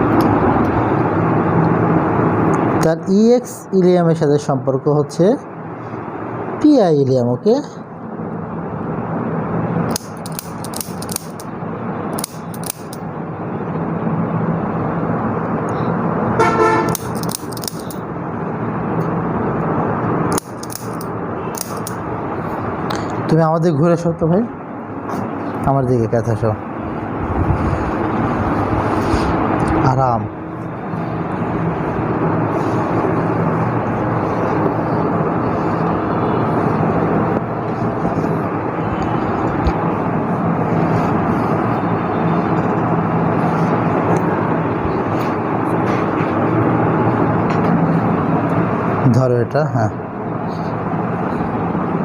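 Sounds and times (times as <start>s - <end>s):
electric fan whooshing: 0.0s - 52.0s
sharp clicks: 9.9s - 11.5s, 12.1s - 13.0s, 16.9s - 18.0s, 20.3s - 22.0s.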